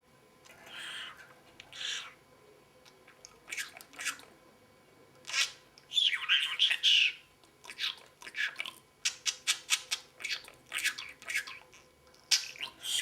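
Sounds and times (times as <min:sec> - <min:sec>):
parrot scratchy breathy noises: 0:00.5 - 0:02.2, 0:12.3 - 0:13.0.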